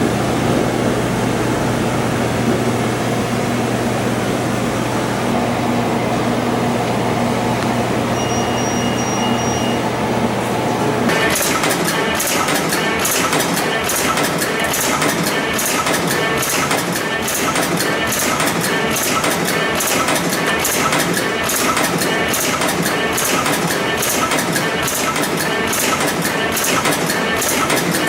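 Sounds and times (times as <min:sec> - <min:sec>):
machine motor hum: 0:00.0 - 0:28.0
rapid clatter of coiling tools: 0:11.1 - 0:28.0.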